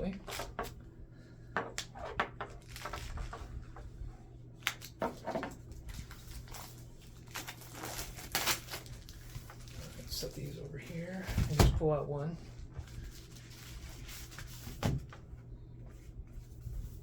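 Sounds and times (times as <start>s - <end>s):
faint steady hum: 0.0s - 17.0s
plastic wrap crinkling: 2.4s - 3.7s, 4.6s - 11.2s, 12.8s - 14.7s.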